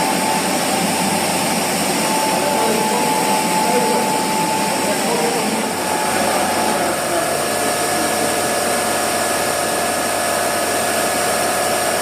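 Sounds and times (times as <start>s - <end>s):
continuous rushing noise: 0.0s - 9.5s
machine motor whine: 0.0s - 12.0s.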